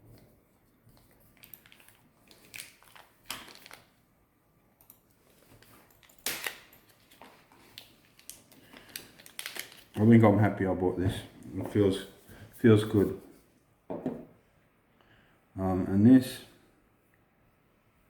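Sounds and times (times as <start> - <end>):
packaging and cable rustling: 0.9 - 4.0, 5.3 - 10.2.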